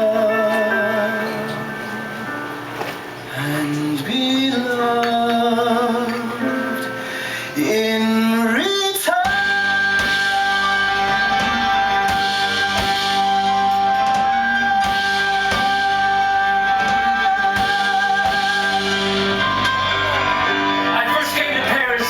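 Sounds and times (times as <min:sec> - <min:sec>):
live band music: 0:00.0 - 0:22.0
sharp drum hits: 0:09.2 - 0:10.7, 0:11.4 - 0:13.5, 0:14.8 - 0:16.2.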